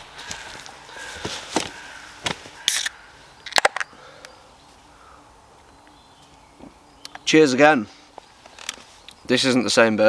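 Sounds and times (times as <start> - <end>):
beer can cracking open: 2.6 - 3.9.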